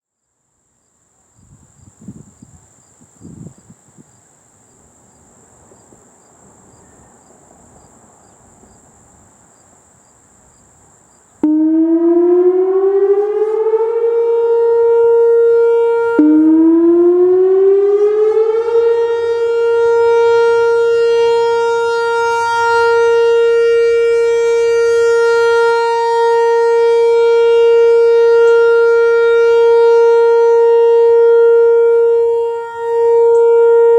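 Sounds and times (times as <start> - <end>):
outdoor warning siren: 11.4 - 33.9.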